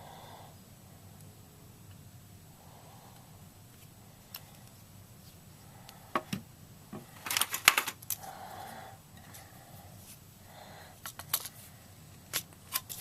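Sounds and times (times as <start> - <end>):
plastic parts clicking: 7.2 - 8.2.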